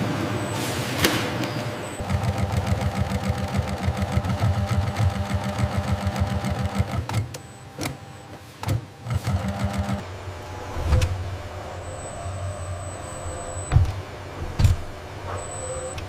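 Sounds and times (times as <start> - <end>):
sewing machine stitching: 2.0 - 7.2, 9.1 - 10.0.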